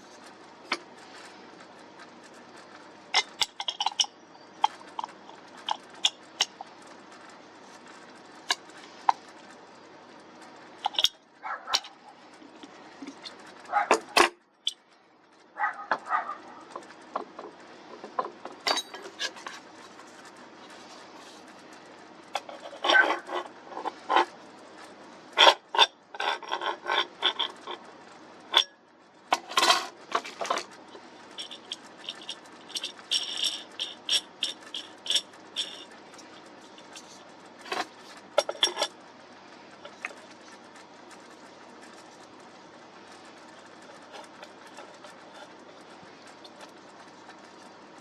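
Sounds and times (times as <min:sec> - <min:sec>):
faint steady hum: 0:00.0 - 0:48.0
small hard objects being handled: 0:15.9 - 0:27.9, 0:29.3 - 0:39.0, 0:39.7 - 0:48.0.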